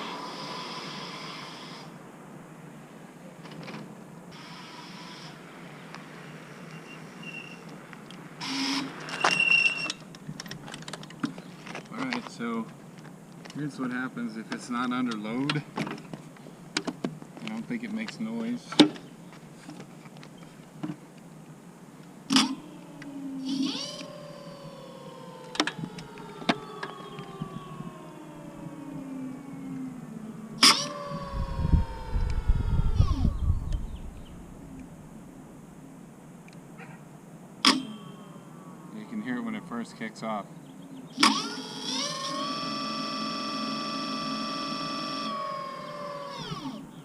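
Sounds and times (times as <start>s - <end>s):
scooter wheel whine: 0.0s - 2.0s, 3.6s - 12.1s, 22.2s - 35.5s, 37.6s - 40.1s, 41.1s - 47.0s.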